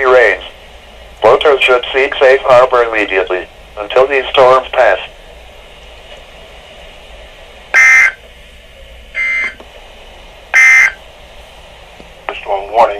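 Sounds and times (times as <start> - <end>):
radio hiss: 0.0 - 12.9
buzzy digital tone bursts: 10.6 - 11.0.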